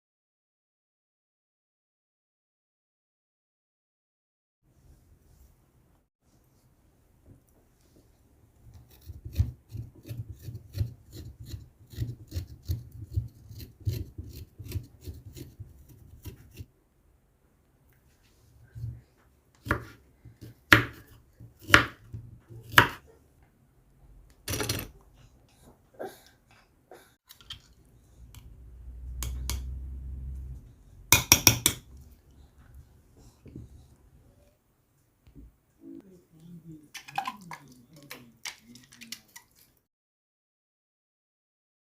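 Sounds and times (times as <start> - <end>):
knife cutting on board: 8.7 - 16.7, 19.6 - 23.0.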